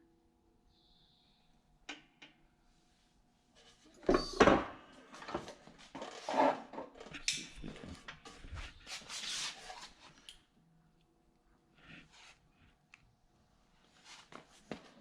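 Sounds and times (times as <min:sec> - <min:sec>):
scraping on steel deck: 0:06.0 - 0:07.0.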